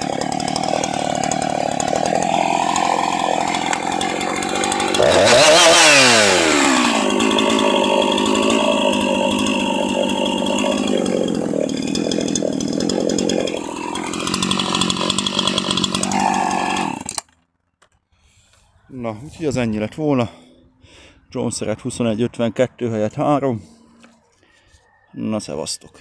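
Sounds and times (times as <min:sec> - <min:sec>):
chainsaw engine revving: 0:00.0 - 0:17.4.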